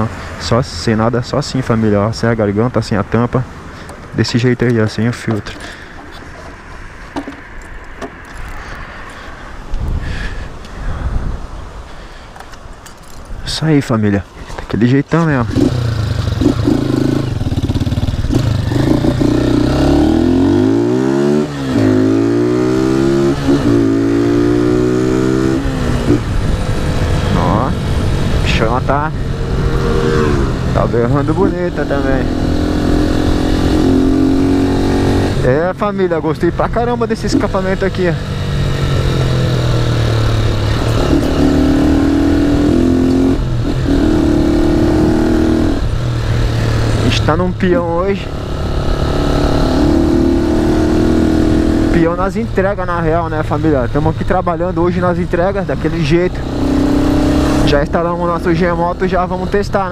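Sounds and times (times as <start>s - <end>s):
motorcycle engine accelerating: 15.4s - 35.7s, 36.4s - 59.9s.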